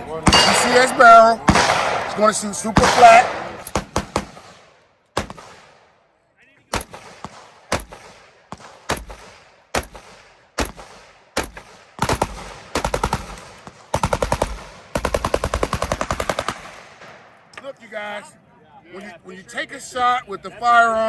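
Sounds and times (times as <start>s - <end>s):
rifle shots: 0.0s - 6.0s, 6.7s - 17.5s.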